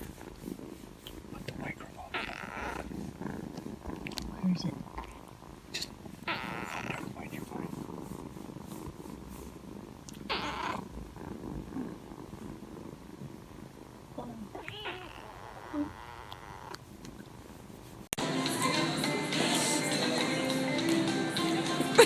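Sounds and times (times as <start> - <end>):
cat purring: 0.0 - 22.0
cat whiny call: 2.0 - 2.9, 5.8 - 7.2, 10.2 - 10.8, 14.6 - 16.8
music: 18.2 - 22.0.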